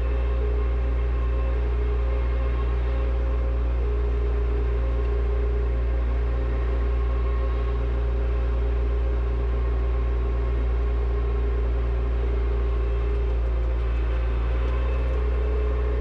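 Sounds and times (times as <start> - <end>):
tractor engine running steadily: 0.0 - 16.0.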